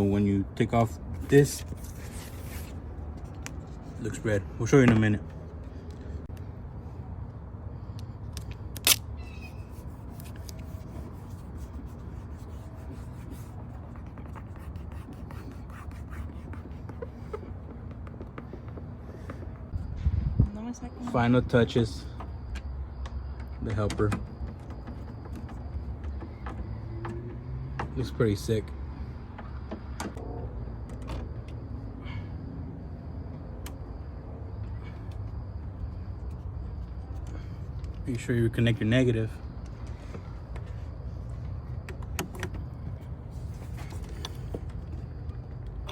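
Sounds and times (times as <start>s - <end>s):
steady low rumble: 18.5s - 20.9s.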